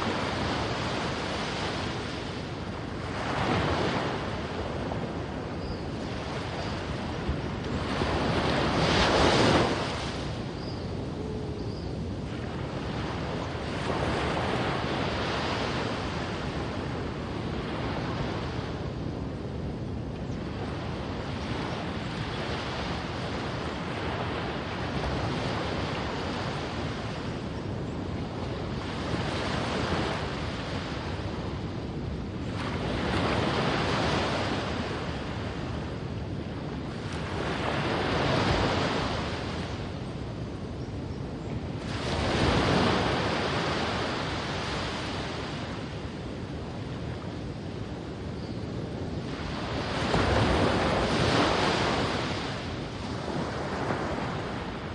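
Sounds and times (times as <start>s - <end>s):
ocean surf breaking on beach: 0.0s - 54.9s.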